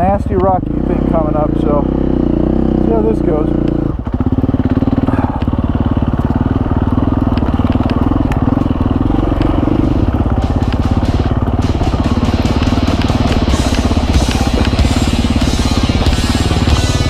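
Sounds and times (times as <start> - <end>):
dirt bike engine running: 0.0 - 17.0
sharp clicks and knocks: 7.2 - 16.8.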